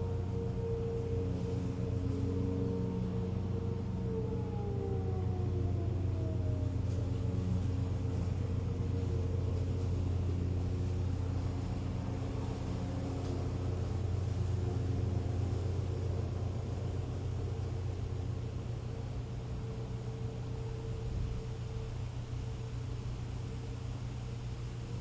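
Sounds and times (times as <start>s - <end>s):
siren winding down: 0.0s - 23.0s
distant siren tones: 0.0s - 25.0s
steady low rumble: 0.0s - 25.0s.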